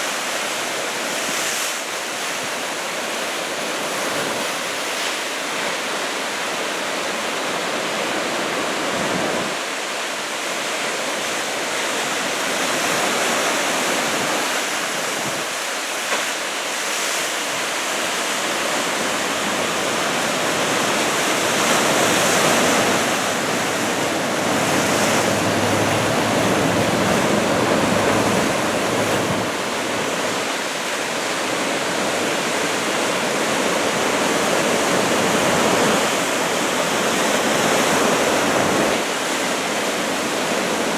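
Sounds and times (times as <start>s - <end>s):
ocean waves breaking: 12.6s - 40.9s.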